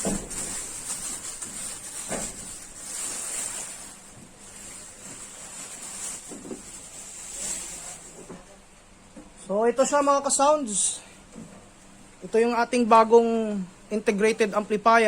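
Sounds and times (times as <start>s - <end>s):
plastic wrapping crinkling: 0.0s - 8.3s.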